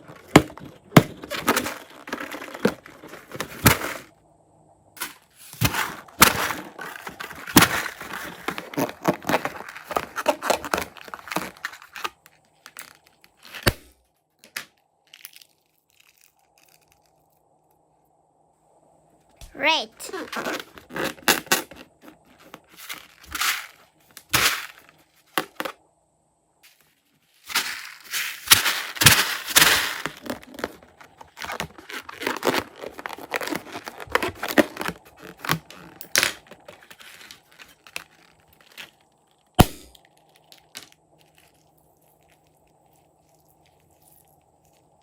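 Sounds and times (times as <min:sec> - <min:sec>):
balloon crinkling when handled: 0:00.0 - 0:04.1, 0:05.0 - 0:13.8, 0:14.4 - 0:17.4, 0:19.5 - 0:25.7, 0:26.7 - 0:45.0.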